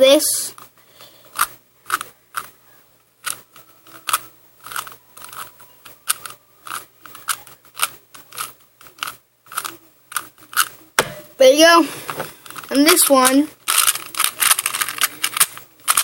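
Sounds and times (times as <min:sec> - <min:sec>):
puzzle cube plastic clicks: 0:03.2 - 0:10.7, 0:12.5 - 0:16.0.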